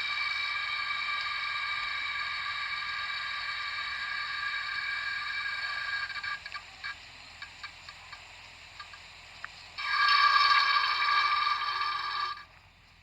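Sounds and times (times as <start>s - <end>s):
water pipe whining: 0.0s - 7.0s, 9.8s - 12.6s
pipe ticking and stuttering: 0.0s - 9.1s, 9.7s - 12.6s.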